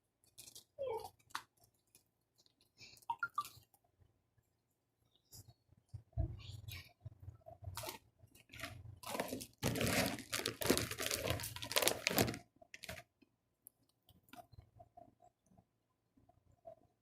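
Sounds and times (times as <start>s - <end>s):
crunchy food being chewed: 7.8s - 13.1s.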